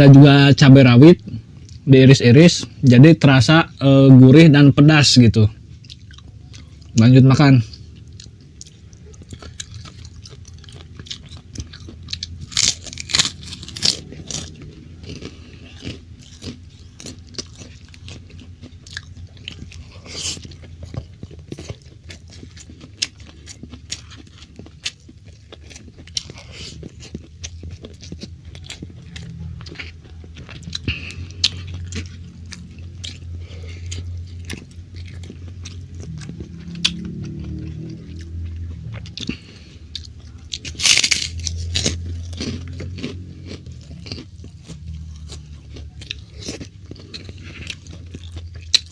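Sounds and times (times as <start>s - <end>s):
low steady hum: 0.0s - 48.9s
chewing food close up: 1.2s - 48.9s
crunchy bites: 7.0s - 48.9s.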